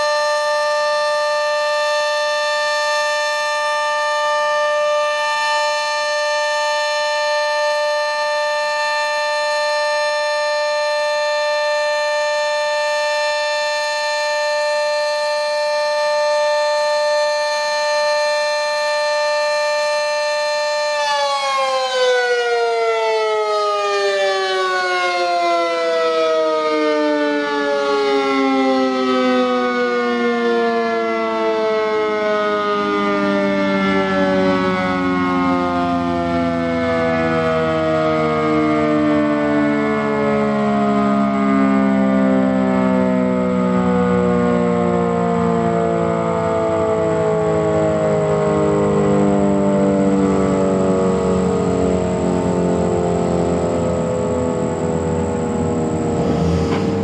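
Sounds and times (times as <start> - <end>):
two-tone warning siren: 0.0 - 57.0.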